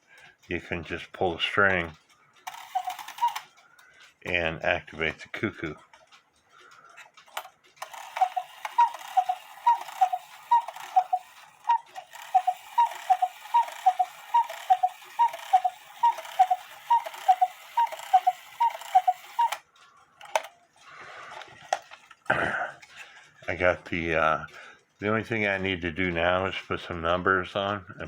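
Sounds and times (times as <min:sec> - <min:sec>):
clock click: 0:00.2 - 0:22.2
cuckoo clock call: 0:01.6 - 0:04.4, 0:07.4 - 0:22.0.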